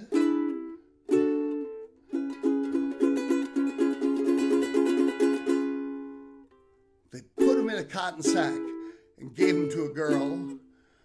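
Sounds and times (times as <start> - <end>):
strummed string instrument: 0.0 - 11.0.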